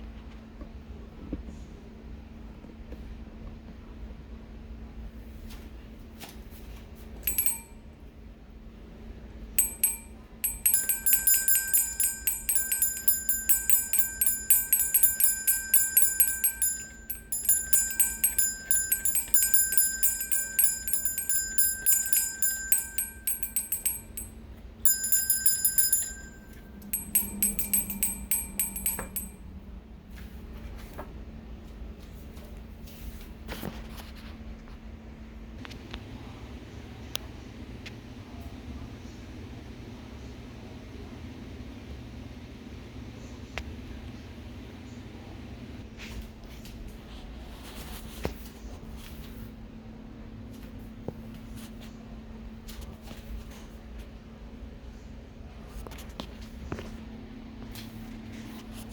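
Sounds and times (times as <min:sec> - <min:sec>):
small high-pitched bell struck rapidly: 0:07.3 - 0:07.8, 0:09.6 - 0:29.4.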